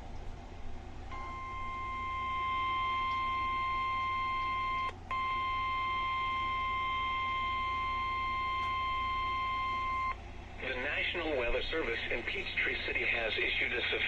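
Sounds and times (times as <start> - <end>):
steady emergency alert beep: 1.1 - 10.2.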